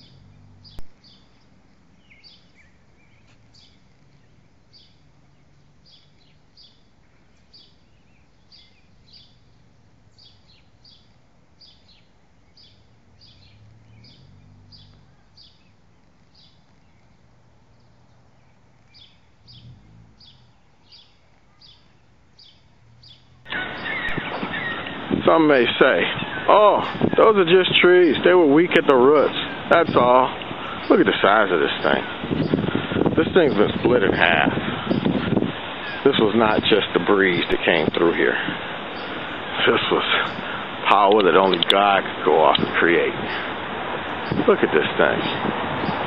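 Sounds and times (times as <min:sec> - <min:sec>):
faint low hum: 0:00.0 - 0:43.5
bird chirping: 0:00.0 - 0:46.0.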